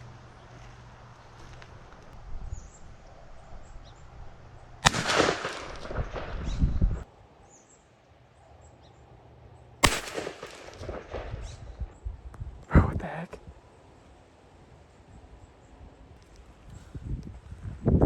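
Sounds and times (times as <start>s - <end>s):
rumbling echo after blast: 4.8s - 7.0s, 9.8s - 12.0s
shotgun blasts: 4.8s - 7.0s, 9.8s - 12.0s.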